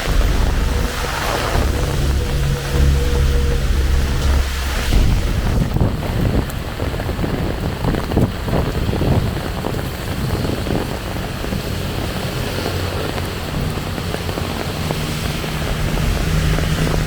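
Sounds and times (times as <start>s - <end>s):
low rumble: 0.0s - 9.5s
heavy rain falling: 0.0s - 17.0s.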